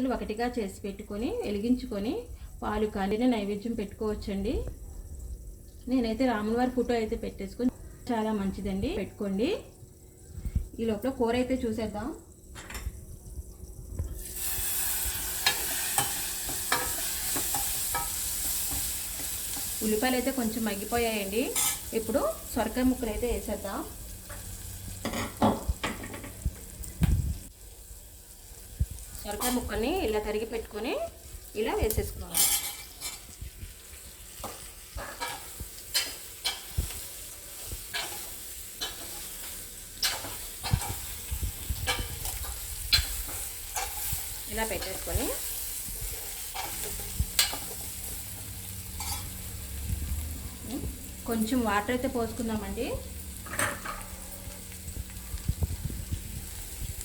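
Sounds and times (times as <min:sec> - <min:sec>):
onions sizzling in oil: 0:00.0 - 0:57.0
spoon scraping in a pot: 0:49.0 - 0:49.4.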